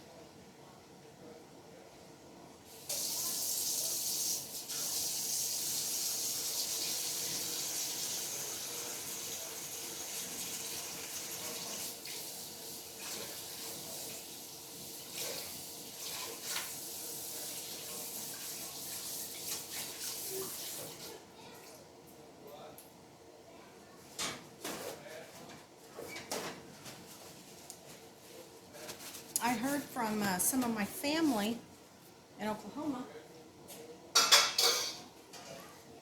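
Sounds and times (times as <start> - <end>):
faucet water running into sink: 2.8 - 21.1.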